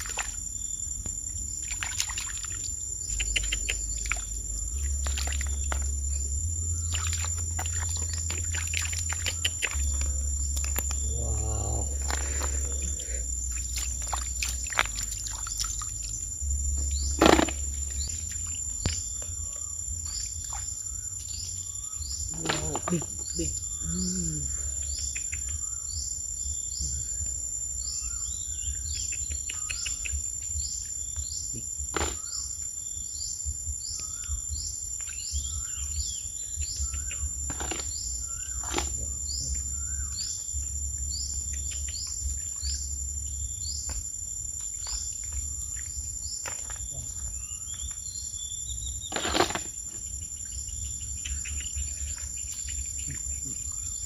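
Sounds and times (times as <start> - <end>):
insects trilling: 0.0 - 54.0
low rumble: 2.4 - 25.8, 35.3 - 46.4.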